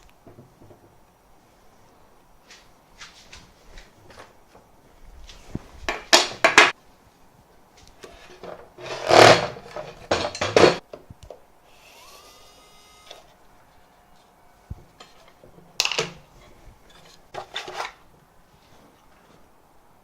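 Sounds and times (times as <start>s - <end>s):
tools clattering: 8.0s - 10.8s
small motor whine: 11.7s - 13.4s.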